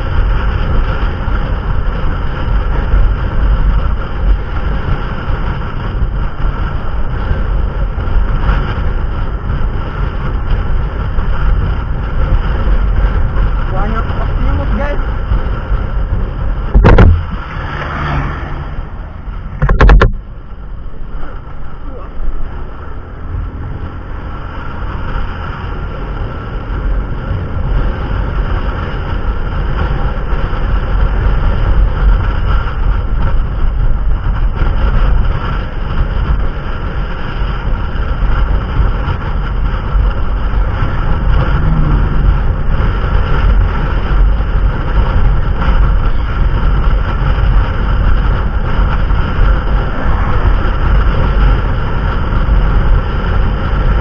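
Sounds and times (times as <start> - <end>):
wind buffeting microphone: 0.0 - 54.0
motorbike engine running: 25.8 - 54.0.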